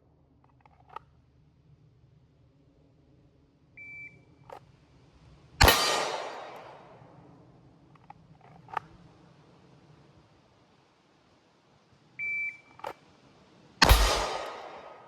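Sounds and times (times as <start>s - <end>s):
pistol shot echoing: 5.6s - 7.2s, 13.8s - 15.0s.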